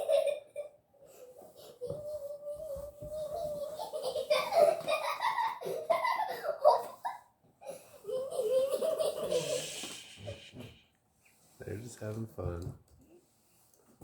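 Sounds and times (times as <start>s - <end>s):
young child laughing: 1.8s - 10.4s.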